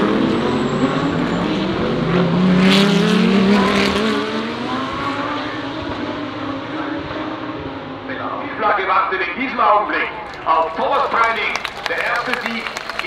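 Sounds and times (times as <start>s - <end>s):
race car engines accelerating past: 0.0s - 9.2s.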